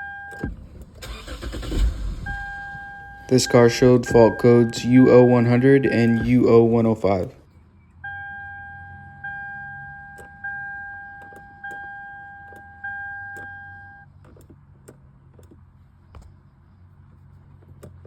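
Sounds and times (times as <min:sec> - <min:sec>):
car warning chime dinging: 0:00.0 - 0:07.3, 0:08.0 - 0:14.1
low hum: 0:00.3 - 0:07.0.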